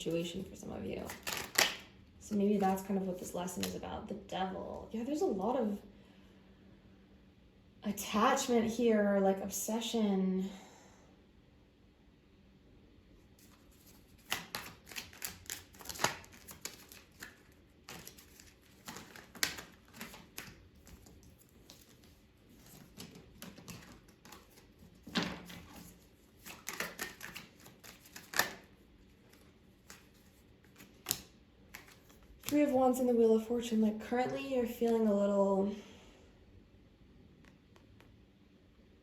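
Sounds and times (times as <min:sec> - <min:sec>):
cards being shuffled: 0:00.1 - 0:01.9, 0:02.5 - 0:03.8, 0:13.4 - 0:32.8.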